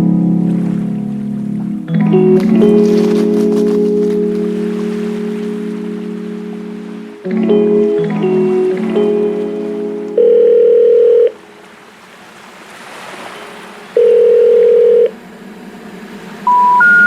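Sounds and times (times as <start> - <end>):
loud electronic tones: 16.5 - 17.0.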